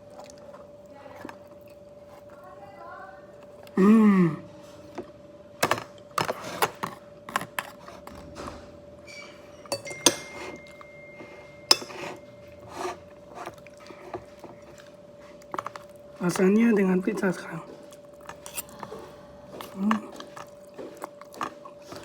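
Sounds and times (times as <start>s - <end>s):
cutlery clinking on a plate: 9.2s - 12.5s.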